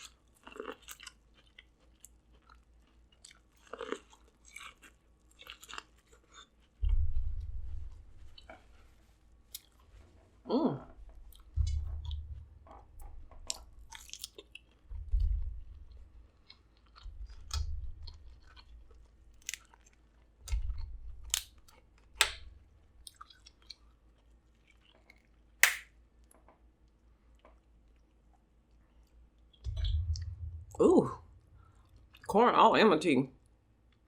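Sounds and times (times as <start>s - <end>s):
chewing and biting food: 0.0s - 7.5s, 13.5s - 14.9s, 15.9s - 22.4s, 23.0s - 25.8s
dull low bumps: 6.8s - 8.4s, 11.2s - 13.9s, 14.9s - 16.2s, 29.6s - 32.8s.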